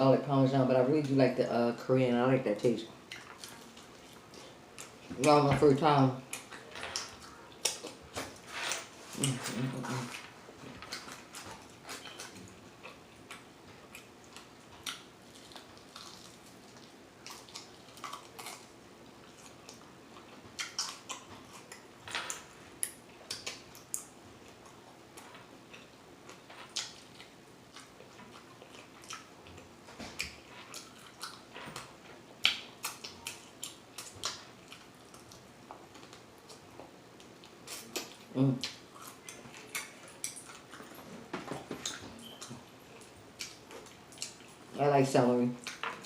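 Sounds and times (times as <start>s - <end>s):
wet chewing: 6.2s - 44.7s.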